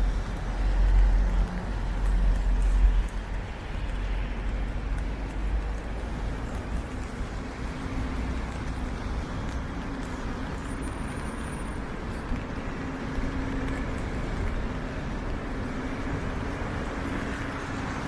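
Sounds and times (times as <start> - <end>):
traffic on wet pavement: 0.0 - 18.0
wind rumbling on microphone: 0.0 - 18.0.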